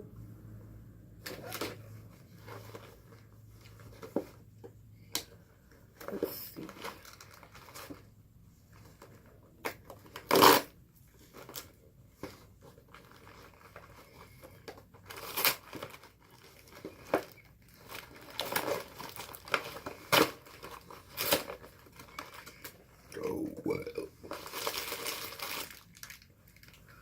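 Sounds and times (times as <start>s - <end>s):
snack packaging crinkling and tearing: 6.6s - 8.1s, 12.6s - 23.1s, 24.0s - 27.0s.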